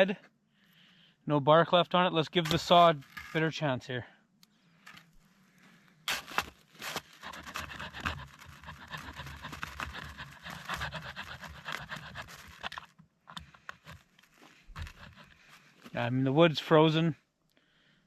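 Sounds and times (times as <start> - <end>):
small saw cutting branch: 6.1 - 15.7.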